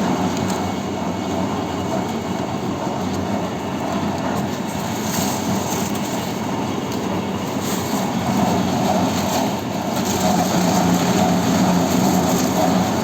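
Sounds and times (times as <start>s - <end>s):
glass recycling machine running: 4.6s - 13.0s.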